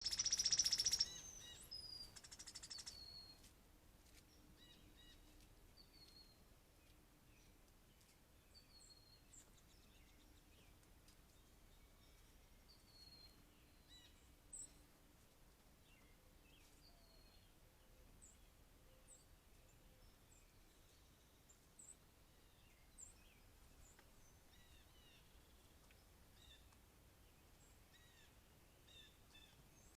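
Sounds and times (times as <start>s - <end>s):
birds chirping and calling: 0.0s - 3.2s
high bird chirp: 0.0s - 3.4s.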